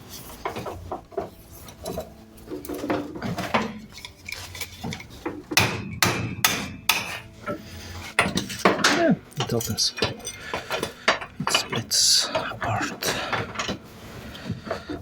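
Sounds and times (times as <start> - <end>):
hammer striking metal: 5.5 - 7.3.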